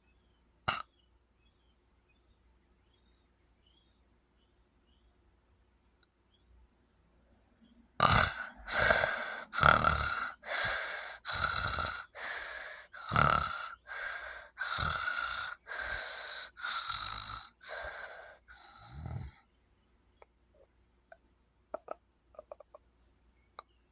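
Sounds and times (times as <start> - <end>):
loud snoring: 8.0 - 19.4.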